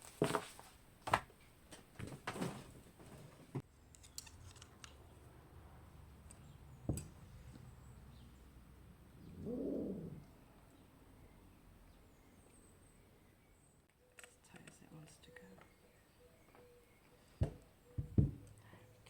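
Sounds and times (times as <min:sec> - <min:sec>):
faint low hum: 0:03.7 - 0:19.0.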